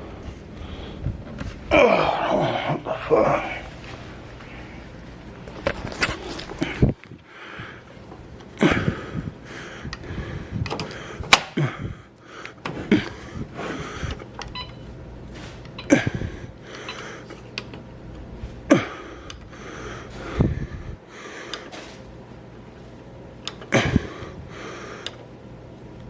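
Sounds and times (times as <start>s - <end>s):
steady low hum: 0.0s - 26.0s
cables rattling: 3.5s - 7.2s.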